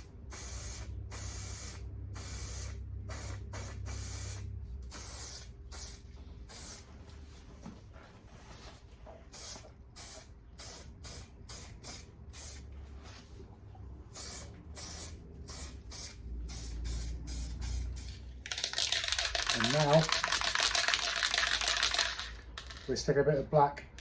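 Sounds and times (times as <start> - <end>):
aerosol spray hissing bursts: 0.0 - 6.9, 9.3 - 12.6, 14.1 - 18.2.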